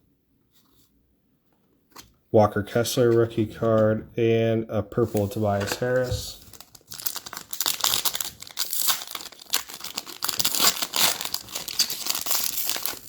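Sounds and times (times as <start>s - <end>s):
wrapper crinkling and tearing: 5.2s - 13.0s.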